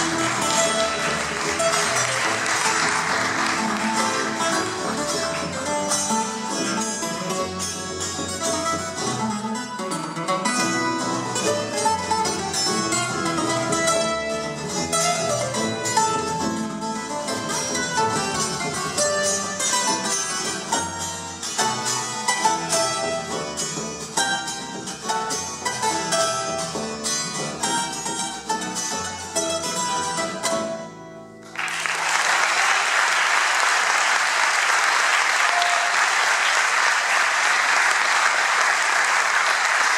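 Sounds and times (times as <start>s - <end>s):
audience applause: 0.0s - 5.8s, 31.5s - 39.9s
double bass: 0.0s - 31.7s
plucked and strummed strings: 0.0s - 31.9s.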